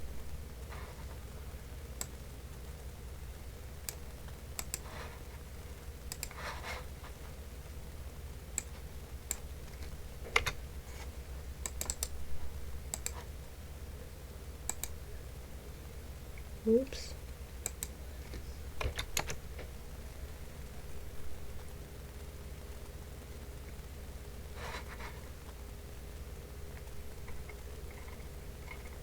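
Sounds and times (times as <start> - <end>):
low steady hum: 0.0 - 29.0
computer keyboard typing: 3.8 - 4.9, 6.1 - 6.4, 8.6 - 9.5, 10.3 - 10.6, 11.6 - 12.2, 12.9 - 13.2, 14.7 - 15.0, 17.6 - 17.9, 18.8 - 19.4.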